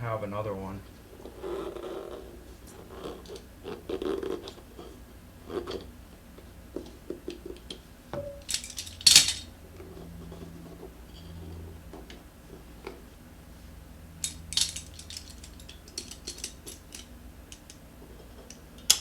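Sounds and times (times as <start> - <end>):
sharp metallic clatter: 8.2 - 9.6
metal tool clinks and scrapes: 8.2 - 11.7, 14.2 - 19.0.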